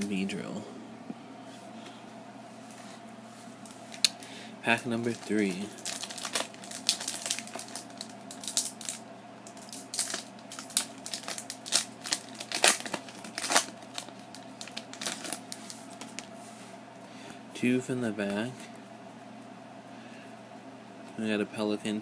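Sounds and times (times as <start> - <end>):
wrapper tearing and crinkling: 5.1 - 16.3.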